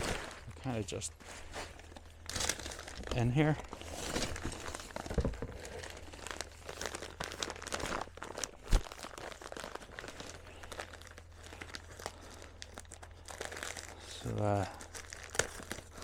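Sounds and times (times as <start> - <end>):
packing paper crinkling: 0.0 - 16.0.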